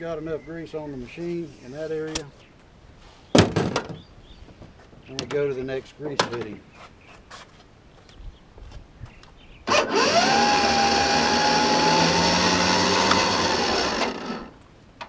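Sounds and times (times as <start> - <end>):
pneumatic grease gun whine: 9.7 - 14.5.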